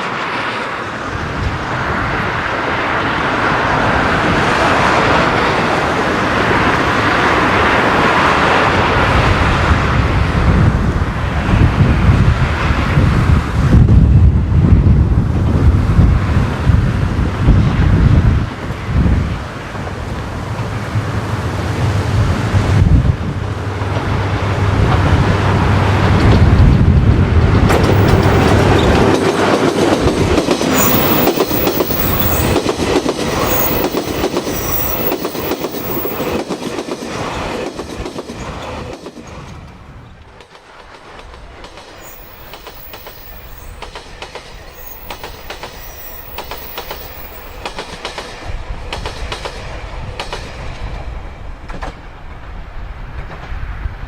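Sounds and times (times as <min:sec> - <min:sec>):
wheels clacking over rail joints: 0:19.8 - 0:52.0
high-pitched wheel squeal: 0:30.8 - 0:32.6, 0:44.6 - 0:47.6.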